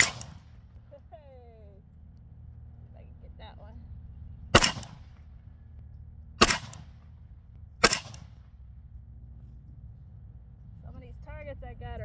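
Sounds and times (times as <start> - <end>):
rifle shots with echo: 0.0 - 0.6, 4.5 - 5.3, 6.4 - 7.2, 7.8 - 8.5.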